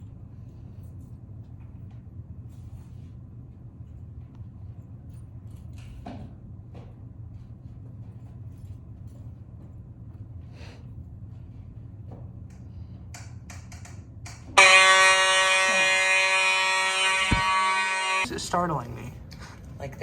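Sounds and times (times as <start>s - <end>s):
fire alarm buzzing: 14.6s - 18.3s
low hum: 14.6s - 18.3s.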